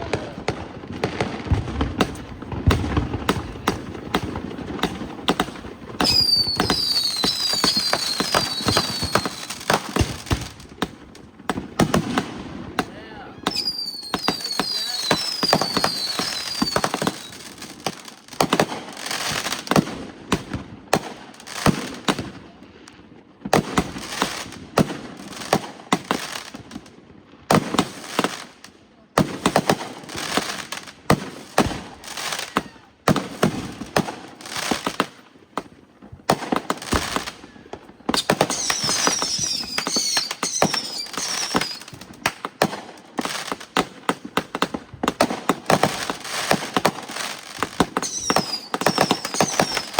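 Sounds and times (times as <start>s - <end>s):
fireworks bangs and pops: 0.0s - 49.9s
high falling firework whistles: 2.0s - 10.2s, 13.3s - 17.6s, 36.9s - 42.0s, 47.9s - 49.9s.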